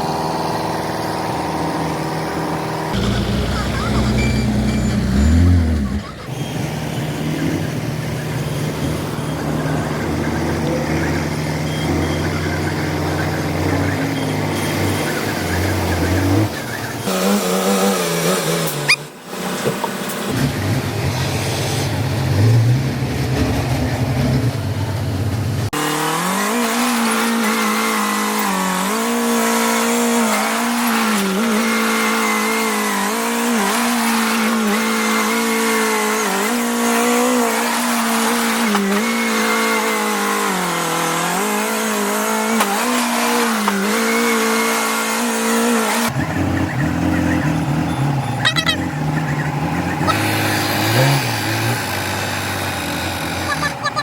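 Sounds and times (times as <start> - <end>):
engine running under changing load: 0.0 - 54.0
deeper rumble: 2.9 - 8.3.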